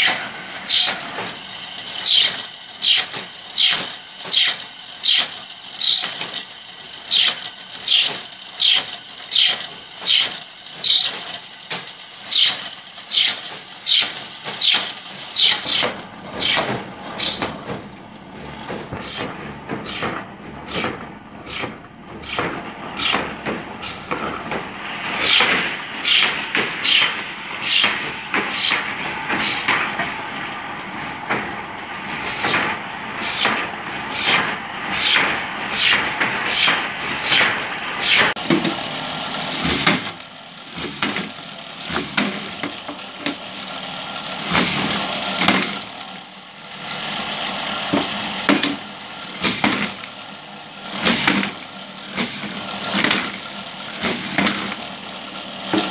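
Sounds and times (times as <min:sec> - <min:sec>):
drill boring into plastic pipe: 0:07.0 - 0:11.2, 0:12.3 - 0:17.5.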